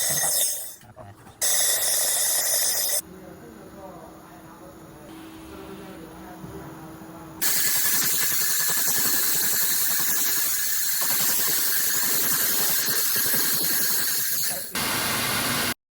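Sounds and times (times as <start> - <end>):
laser machine hissing and crackling: 0.0 - 0.8, 1.4 - 3.0, 3.7 - 15.8.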